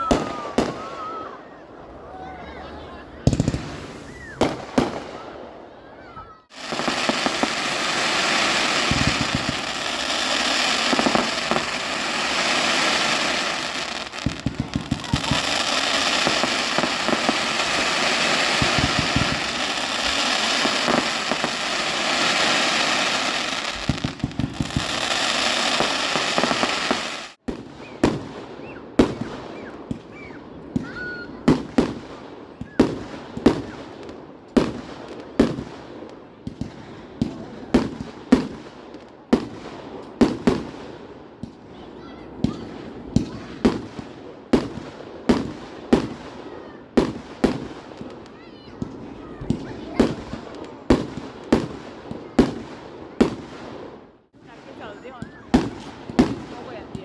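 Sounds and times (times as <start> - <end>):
fireworks crackling and popping: 0.0 - 1.5, 3.1 - 5.7, 6.3 - 57.0
sharp firework bangs ringing: 6.5 - 28.3.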